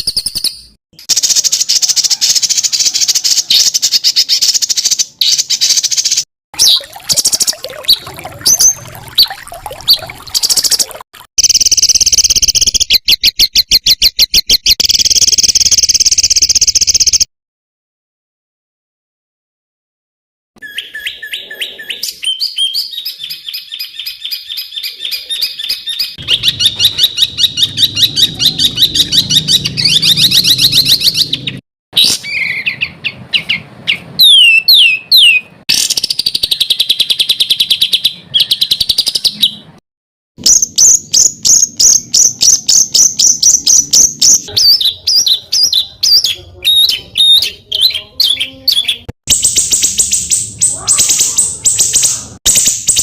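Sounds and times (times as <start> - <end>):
songbird singing: 0.0 - 17.3, 20.6 - 39.7, 40.4 - 53.0.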